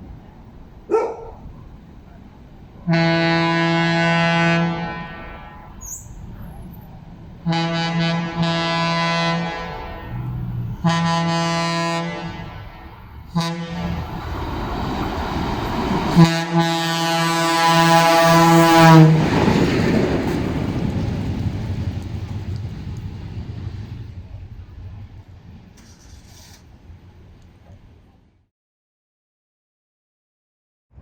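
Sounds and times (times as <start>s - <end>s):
passing train: 0.0s - 28.4s
locomotive air horn blasts: 2.8s - 6.3s, 7.4s - 14.6s, 15.9s - 19.6s.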